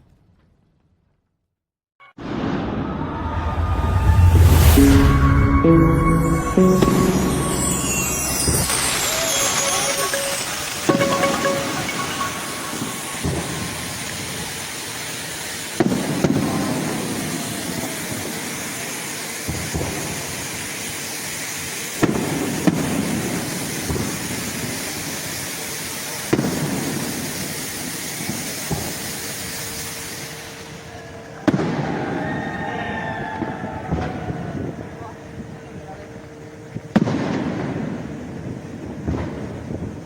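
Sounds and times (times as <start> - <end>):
fireworks booming: 2.2 - 25.5, 26.2 - 29.6, 31.4 - 32.2, 36.9 - 40.0
crackling hiss of fireworks: 5.6 - 40.0.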